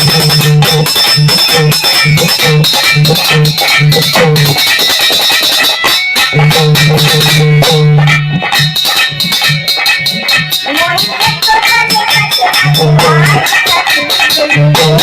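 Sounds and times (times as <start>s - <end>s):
held low bass line: 0.0s - 4.6s, 6.4s - 8.4s
fast percussion beat: 0.0s - 15.0s
plucked-string melody: 0.0s - 15.0s.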